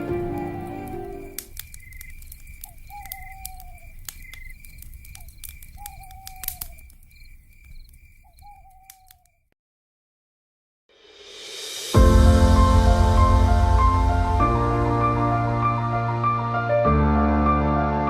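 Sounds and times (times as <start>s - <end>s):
falling whistled calls: 0.0s - 9.5s
scattered clicks: 0.8s - 9.3s
low rumble: 12.0s - 16.4s.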